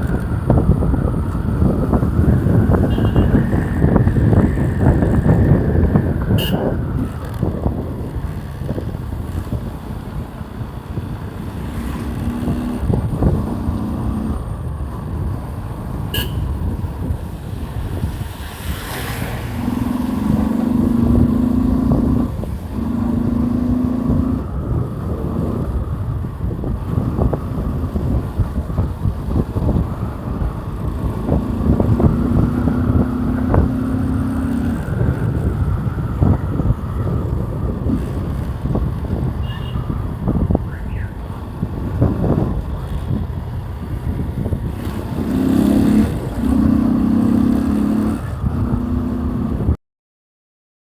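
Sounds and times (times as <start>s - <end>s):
motorcycle engine: 0.0s - 49.7s
wind rumble on microphone: 0.0s - 49.8s.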